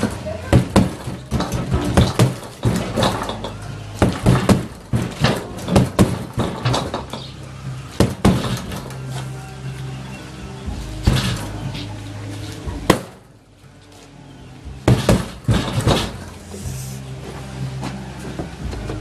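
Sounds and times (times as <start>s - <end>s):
knocks and clattering thuds: 0.0s - 7.3s, 7.9s - 9.1s, 11.0s - 11.6s, 14.8s - 16.4s.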